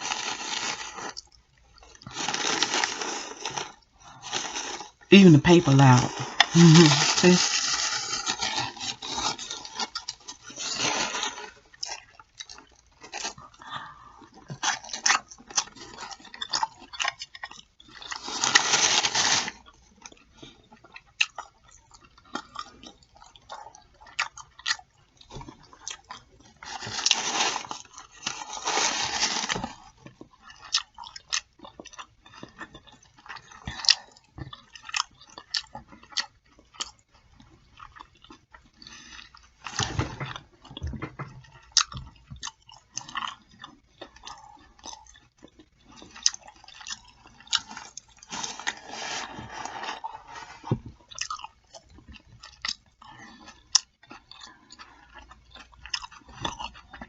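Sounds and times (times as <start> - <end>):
wet chewing: 0.0 - 57.0.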